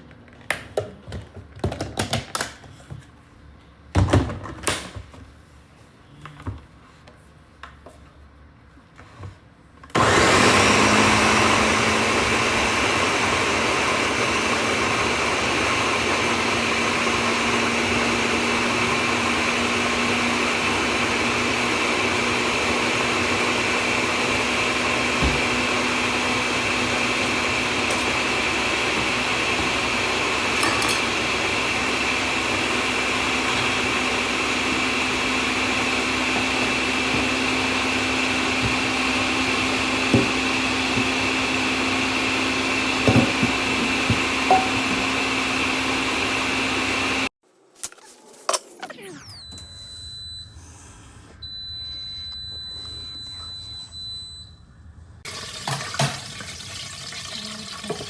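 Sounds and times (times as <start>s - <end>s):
electric blender running: 9.9s - 47.3s, 55.3s - 58.0s.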